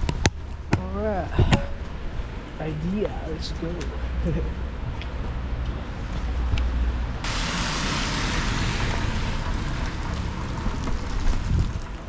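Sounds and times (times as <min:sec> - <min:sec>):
low street rumble: 0:00.0 - 0:12.0
rain hiss: 0:07.2 - 0:12.0.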